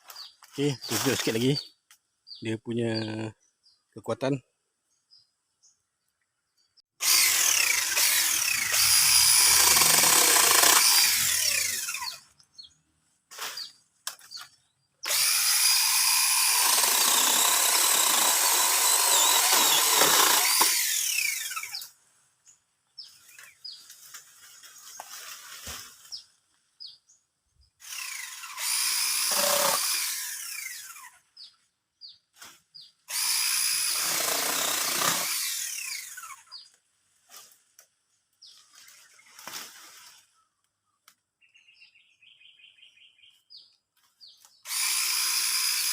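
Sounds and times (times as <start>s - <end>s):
mini chainsaw cutting wood: 7.0s - 12.3s, 15.0s - 22.0s, 27.8s - 31.5s, 33.1s - 36.7s, 44.5s - 45.9s.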